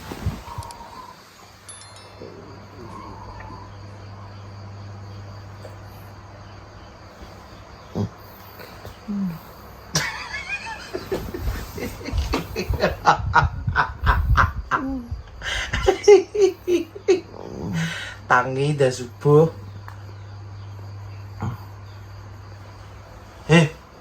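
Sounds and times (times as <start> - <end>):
insects chirping: 0.0 - 24.0
short laughs: 9.2 - 17.2.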